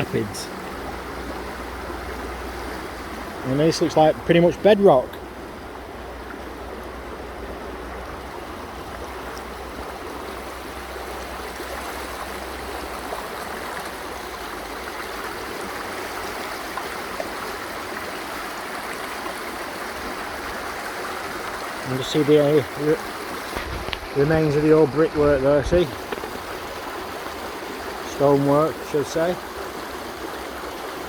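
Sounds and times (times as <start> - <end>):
river rapids rushing over rock: 9.9 - 31.0.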